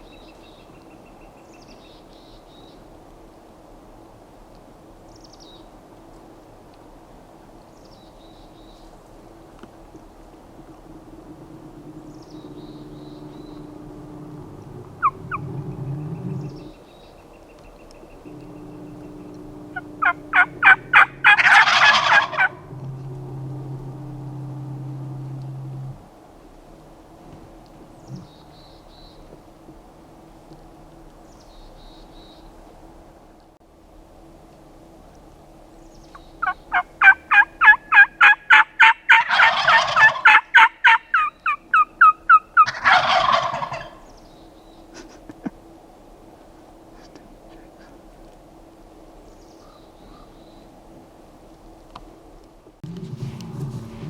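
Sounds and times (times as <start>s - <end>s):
low steady hum: 2.1s - 40.2s, 42.7s - 54.0s
turkey yelping: 14.7s - 16.7s, 18.7s - 22.8s, 36.4s - 44.0s
turkey gobble: 14.8s - 16.7s, 18.5s - 22.8s, 36.4s - 44.0s.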